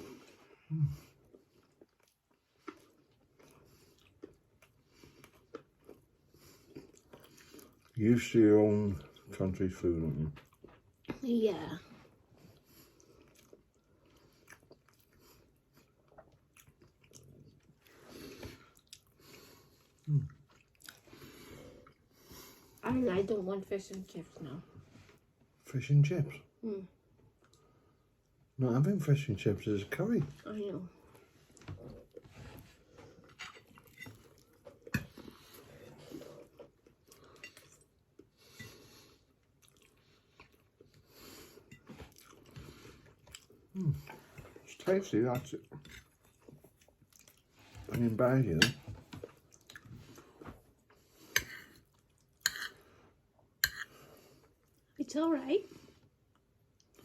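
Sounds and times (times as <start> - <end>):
faint chewing of food: 0.0 - 22.9, 27.0 - 28.6, 30.2 - 55.0, 55.6 - 57.0.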